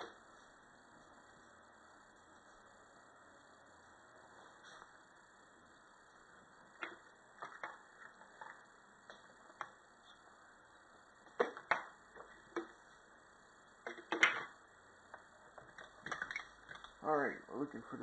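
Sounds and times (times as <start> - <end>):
small parts and tools clicking: 13.8 - 17.0.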